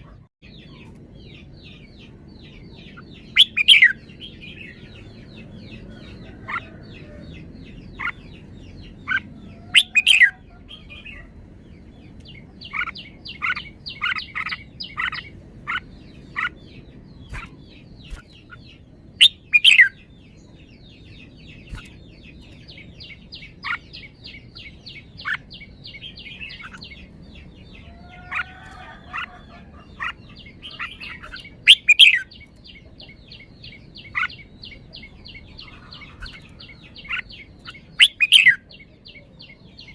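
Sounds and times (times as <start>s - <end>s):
high chattering bird notes: 0.0s - 11.4s, 12.0s - 39.9s
bird whistled phrases: 9.7s - 10.4s.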